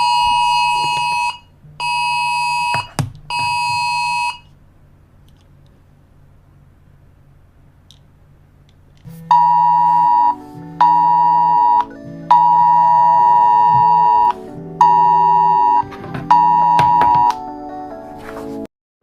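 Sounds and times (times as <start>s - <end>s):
faint hum: 0.0s - 18.4s
sustained synth chord: 9.1s - 16.9s
low held tone: 9.1s - 17.4s.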